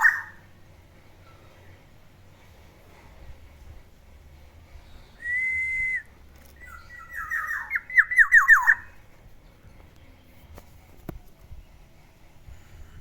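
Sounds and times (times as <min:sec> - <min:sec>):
bird whistling song: 0:00.0 - 0:00.5, 0:05.0 - 0:09.0.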